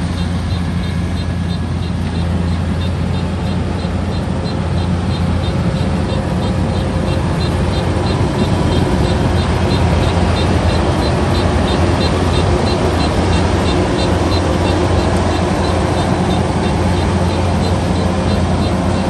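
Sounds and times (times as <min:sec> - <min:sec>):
harvester engine drone: 0:00.0 - 0:19.0
high regular ticking: 0:00.0 - 0:19.0.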